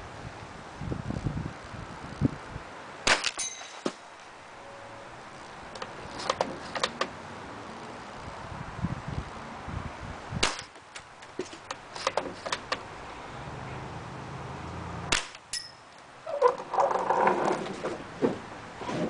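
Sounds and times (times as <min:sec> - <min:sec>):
airsoft rifle shot: 0:03.0 - 0:04.0, 0:10.4 - 0:10.7, 0:15.1 - 0:15.4
metallic ding of pellet hitting can: 0:03.4 - 0:04.0, 0:15.5 - 0:15.8.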